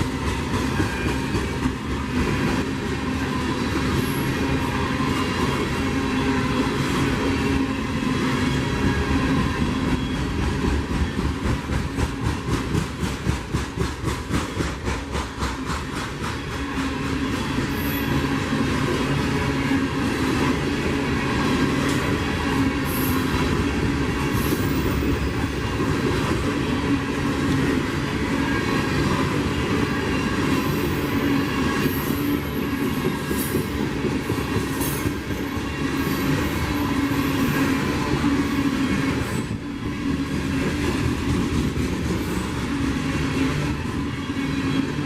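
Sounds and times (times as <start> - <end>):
steel wheels rumbling on rail: 0.0 - 45.0
high-pitched wheel squeals: 17.4 - 18.3.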